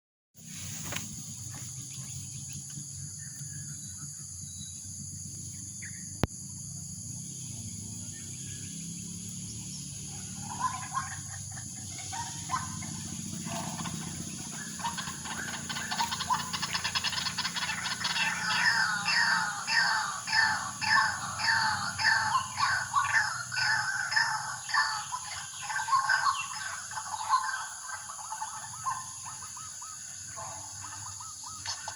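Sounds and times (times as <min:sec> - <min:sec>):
waterhen calling: 0:10.1 - 0:31.9.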